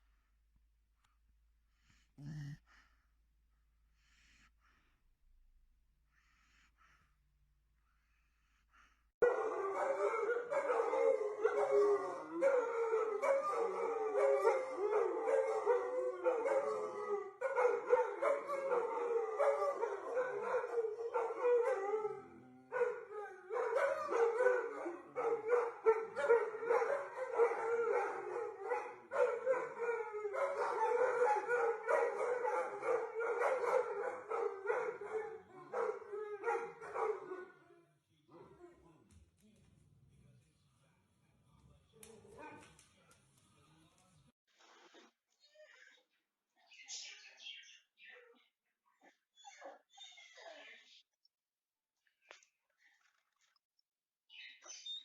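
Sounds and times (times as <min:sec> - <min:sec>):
dog howling: 0:09.2 - 0:37.8.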